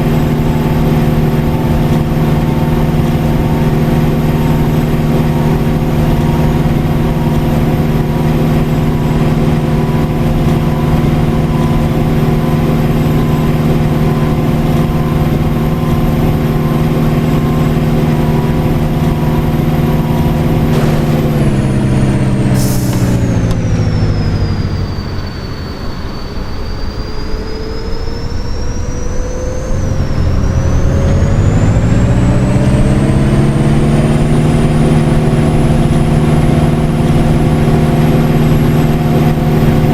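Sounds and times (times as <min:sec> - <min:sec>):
bus engine running: 0:00.0 - 0:39.9
air brakes hiss: 0:22.4 - 0:27.4.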